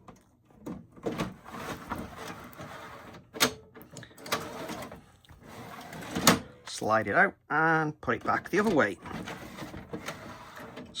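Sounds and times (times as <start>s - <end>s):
disc caddy scraping into player slot: 9.0s - 11.0s.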